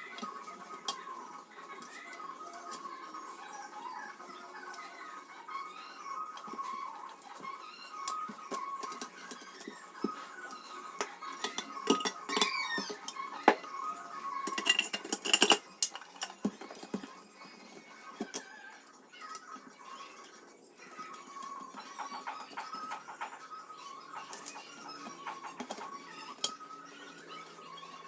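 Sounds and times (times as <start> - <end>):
background music: 0.0 - 28.0
small metallic clicks and clinks: 11.0 - 13.3, 14.4 - 17.1.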